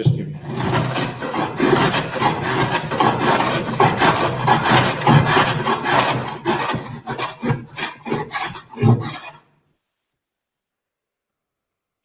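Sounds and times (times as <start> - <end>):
plane rasping through wood: 0.4 - 9.4.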